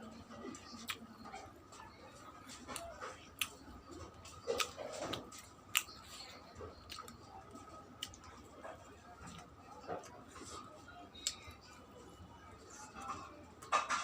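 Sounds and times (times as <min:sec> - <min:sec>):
wet chewing and lip smacking: 0:02.6 - 0:08.6.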